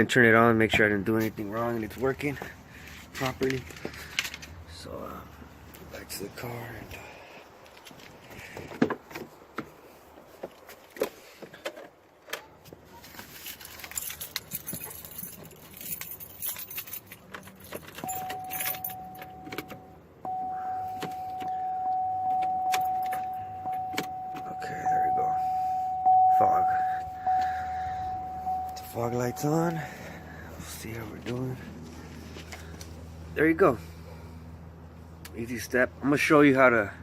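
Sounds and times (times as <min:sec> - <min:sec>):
car keys jangling: 0:13.2 - 0:33.0
electronic car warning tone: 0:18.0 - 0:30.4.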